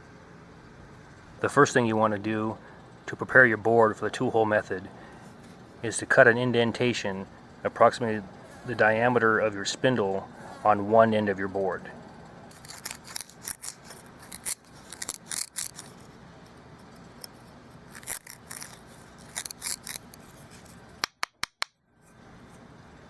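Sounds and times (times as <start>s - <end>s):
knife carving dry wood: 12.5s - 21.7s.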